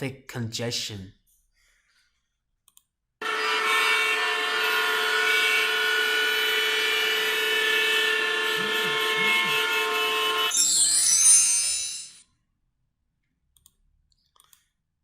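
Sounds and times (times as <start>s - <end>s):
many vehicle horns blaring: 3.2s - 10.6s.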